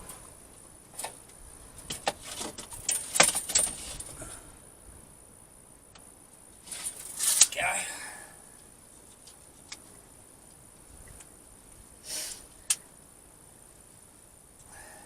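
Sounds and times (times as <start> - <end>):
tools clicking and rattling on plywood: 1.9 - 4.2.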